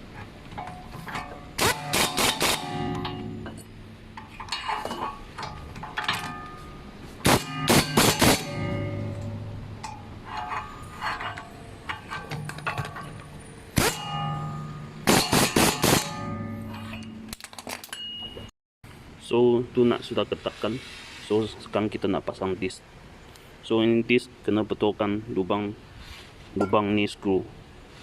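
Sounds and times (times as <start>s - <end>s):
steady low hum: 0.0s - 17.4s
metal tools clanking: 0.0s - 18.5s.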